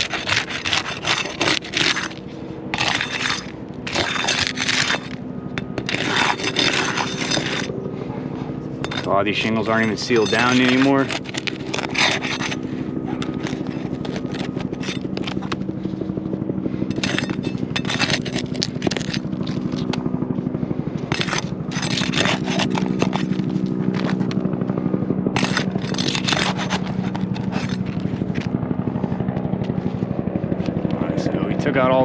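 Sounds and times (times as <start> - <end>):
shingles scraping and crackling: 0.0 - 7.7, 8.8 - 15.7, 16.9 - 20.1, 21.1 - 24.5, 25.4 - 28.6
steady engine hum: 0.0 - 32.0.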